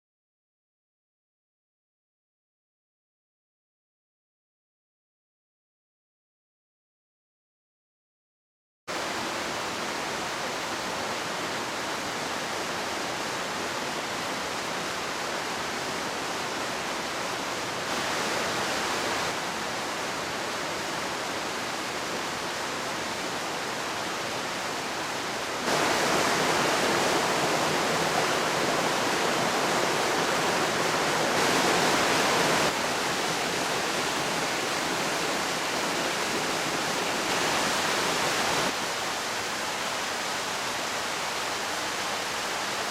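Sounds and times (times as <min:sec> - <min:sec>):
stream running over stones: 0:08.9 - 0:42.9.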